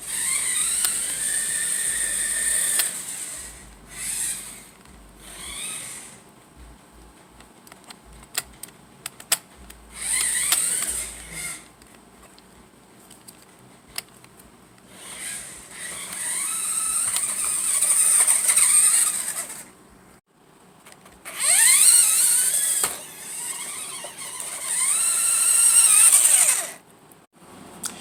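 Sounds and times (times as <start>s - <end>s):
toy car motor whining: 0.0s - 6.2s, 9.9s - 11.7s, 14.9s - 19.7s, 21.3s - 26.8s.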